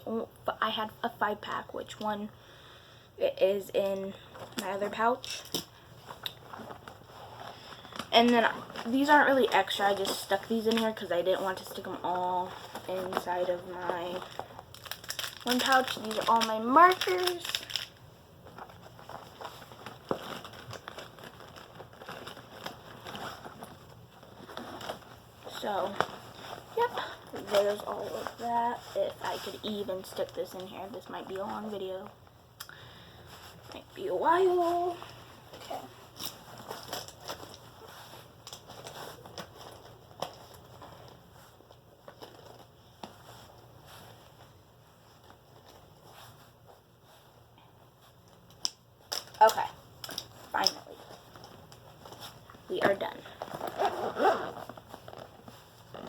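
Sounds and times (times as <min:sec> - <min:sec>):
pouch rustling: 0:18.5 - 0:29.6, 0:34.6 - 0:44.5, 0:50.1 - 0:56.0.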